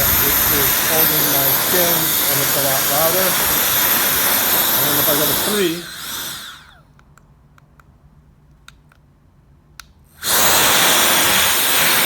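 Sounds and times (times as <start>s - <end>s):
electric air duster blowing: 0.0s - 6.8s, 10.2s - 12.0s.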